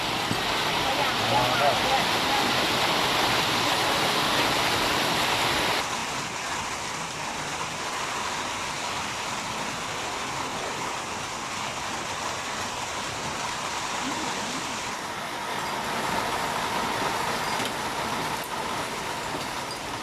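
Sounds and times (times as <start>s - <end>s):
heavy rain falling: 0.0s - 20.0s.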